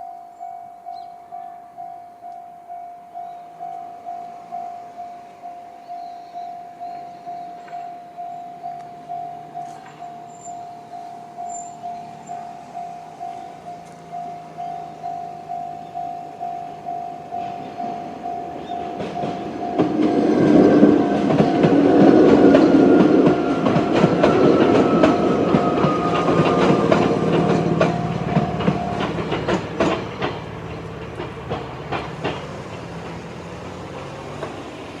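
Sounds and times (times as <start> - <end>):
level crossing alarm dinging: 0.0 - 30.2
train wheels clacking over rail joints: 9.6 - 35.0.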